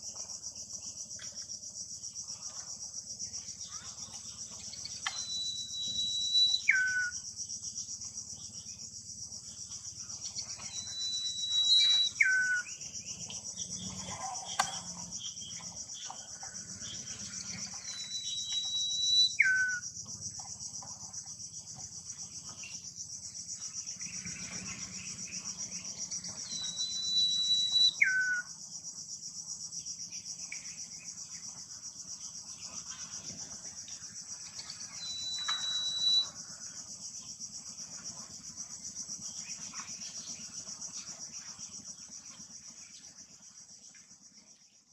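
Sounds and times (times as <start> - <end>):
shrill drone of insects: 0.0 - 44.9
bird singing long whistles: 4.6 - 7.2, 10.2 - 13.2, 16.9 - 19.9, 24.2 - 28.6, 34.4 - 36.6.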